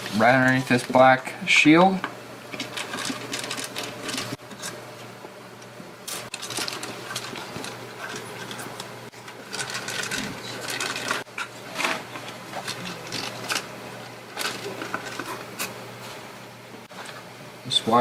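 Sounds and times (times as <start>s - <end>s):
steady low hum: 0.0s - 18.0s
plastic parts clicking and rattling: 2.5s - 4.7s, 6.2s - 13.7s, 14.3s - 15.7s.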